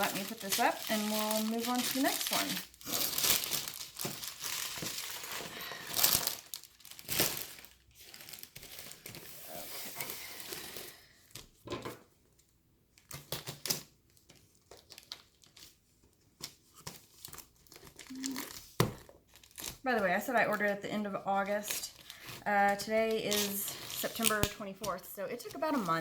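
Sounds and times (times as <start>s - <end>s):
plastic packaging crinkling: 0.0s - 11.4s, 13.0s - 15.8s, 16.8s - 19.9s, 21.5s - 24.7s.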